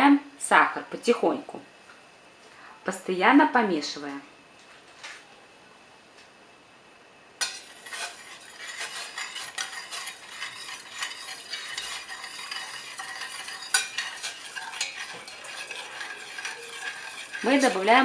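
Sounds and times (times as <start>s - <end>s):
boiling water hissing: 7.4s - 18.0s
spoon scraping a saucepan: 7.4s - 18.0s.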